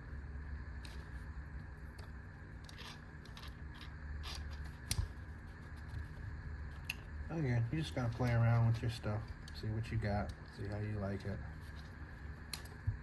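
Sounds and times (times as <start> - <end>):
low steady hum: 0.0 - 13.0
hand tools rustling and clicking: 7.8 - 12.8.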